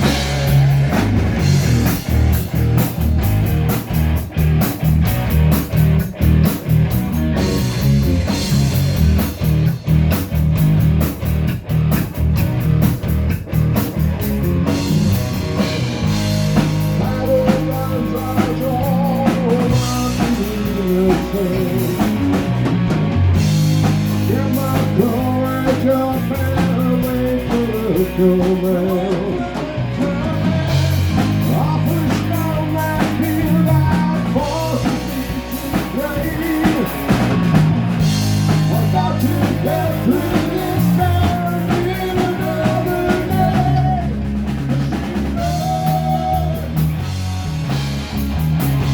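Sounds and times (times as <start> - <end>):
pounding drums: 0.0 - 12.1
live rock band playing: 0.0 - 48.9.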